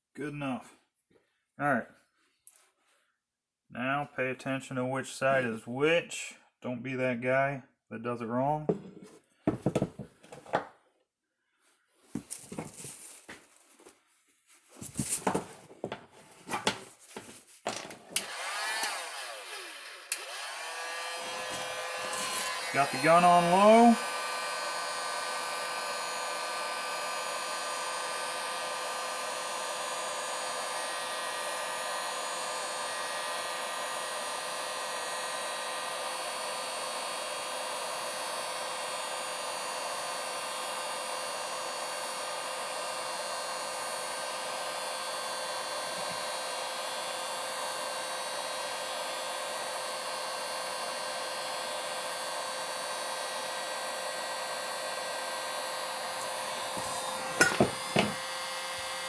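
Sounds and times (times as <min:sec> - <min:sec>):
heat gun blowing hiss: 0:18.2 - 0:48.6, 0:49.6 - 0:59.0.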